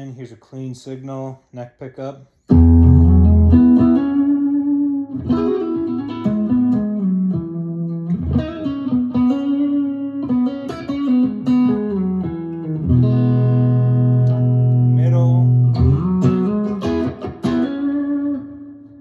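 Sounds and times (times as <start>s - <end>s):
clean electric guitar: 2.5s - 19.0s.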